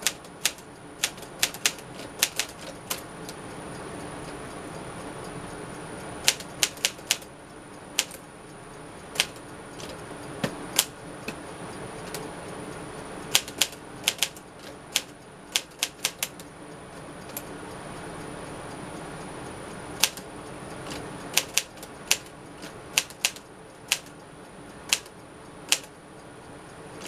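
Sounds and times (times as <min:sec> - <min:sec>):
typewriter key clacks: 0:00.0 - 0:03.0, 0:06.3 - 0:07.2, 0:13.3 - 0:16.5, 0:20.0 - 0:20.2, 0:20.9 - 0:24.1.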